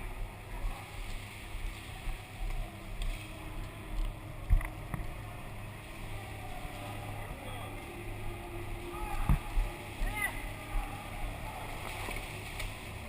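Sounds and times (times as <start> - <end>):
soft low thumps: 8.8 - 11.1.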